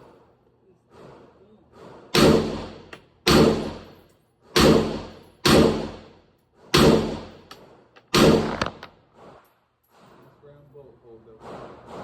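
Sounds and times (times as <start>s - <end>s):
rifle single shots: 8.1s - 8.8s.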